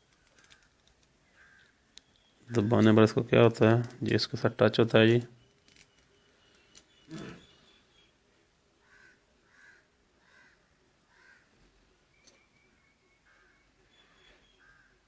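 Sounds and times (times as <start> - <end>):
faint bird calls: 0.2 - 2.8, 5.3 - 8.2, 8.8 - 15.0.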